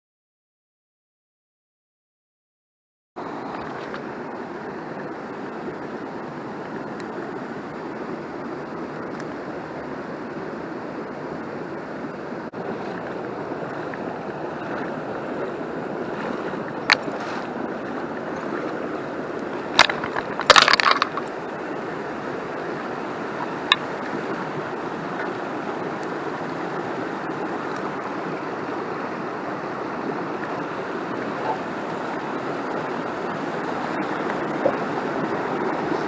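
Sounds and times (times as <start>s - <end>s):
stream flowing over rocks: 3.2s - 36.0s.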